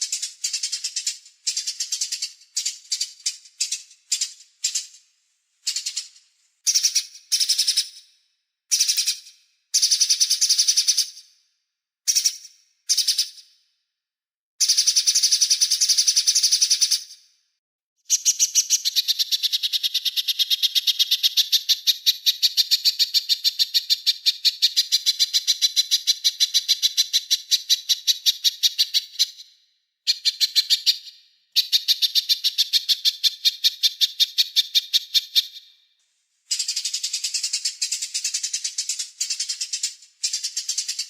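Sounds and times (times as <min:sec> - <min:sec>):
songbird chipping: 0:00.0 - 0:05.0, 0:18.1 - 0:29.5, 0:36.5 - 0:41.0.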